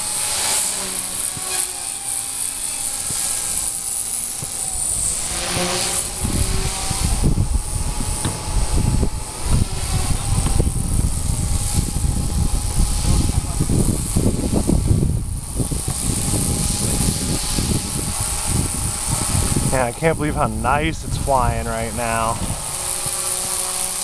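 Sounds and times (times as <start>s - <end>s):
rc helicopter rotor whining: 0.0s - 24.0s
wind buffeting microphone: 6.0s - 23.5s.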